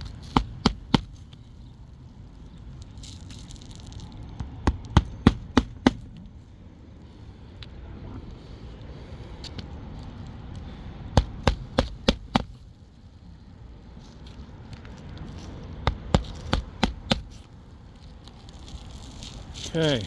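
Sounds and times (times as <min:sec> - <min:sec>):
hammer striking nails: 0:00.0 - 0:01.2, 0:04.7 - 0:06.2, 0:11.2 - 0:12.6, 0:15.9 - 0:17.4.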